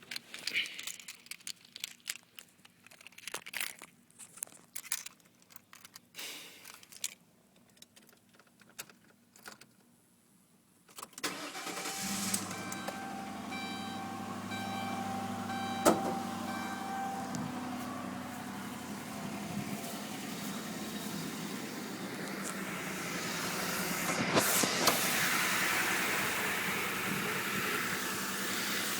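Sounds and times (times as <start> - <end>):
keys rattling: 0.0 - 9.8
car engine starting and idling: 11.2 - 28.9.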